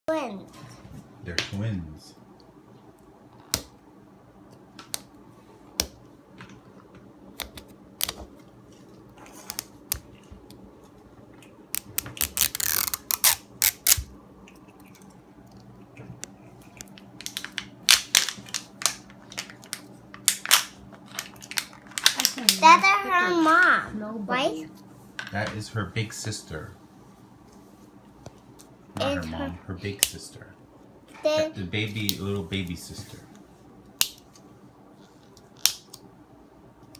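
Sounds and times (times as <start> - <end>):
packaging crinkling rustle: 17.3 - 22.5.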